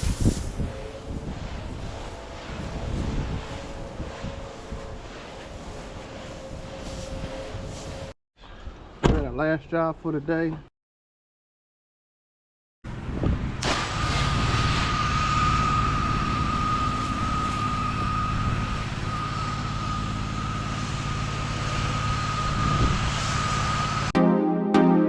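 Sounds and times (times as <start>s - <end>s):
constant high whine: 0.0s - 8.2s, 13.6s - 24.1s.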